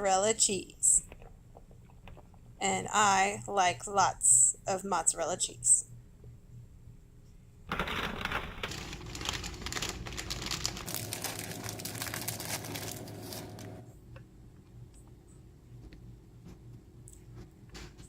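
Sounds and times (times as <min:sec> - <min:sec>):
plastic packaging crinkling: 0:07.7 - 0:13.8.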